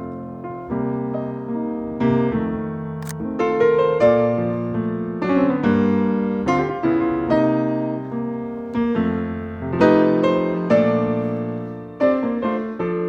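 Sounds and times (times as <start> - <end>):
piano music: 0.0 - 13.0
sharp click: 3.0 - 3.2.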